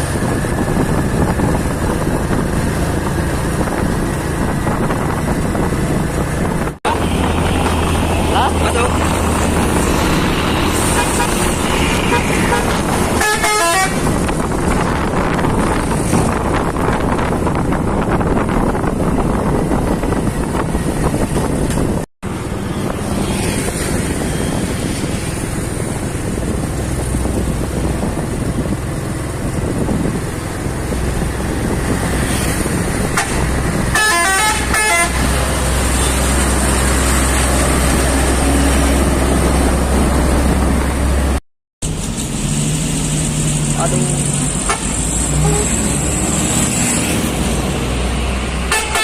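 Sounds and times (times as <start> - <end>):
horn short notes: 34.0 - 35.3, 48.7 - 49.0.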